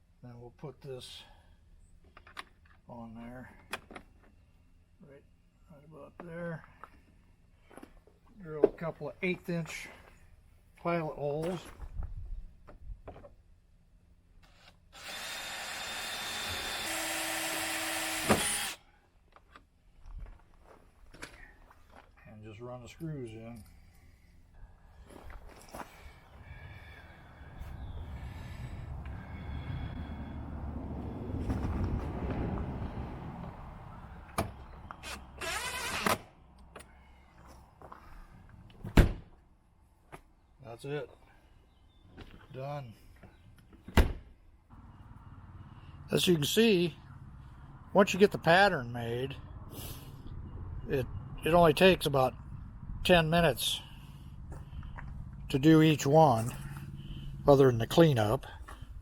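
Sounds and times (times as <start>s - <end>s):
power drill whining: 14.4s - 18.8s, 35.0s - 36.2s.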